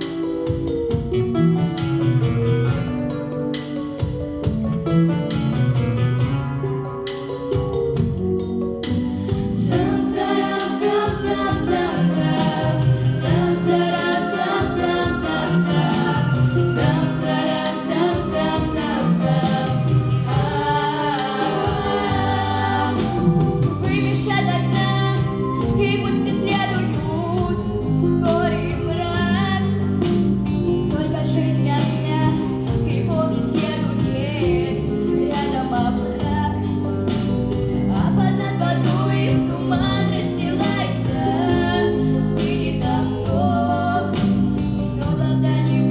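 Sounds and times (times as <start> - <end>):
instrumental accompaniment: 0.0 - 45.9
girls singing together: 9.6 - 27.6, 37.9 - 45.9.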